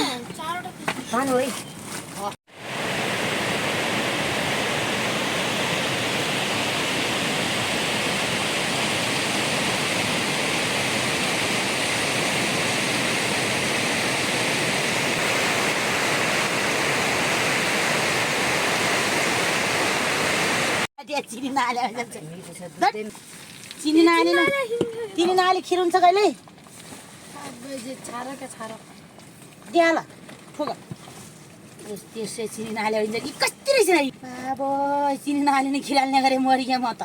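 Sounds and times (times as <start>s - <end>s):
rushing water: 2.5s - 20.9s.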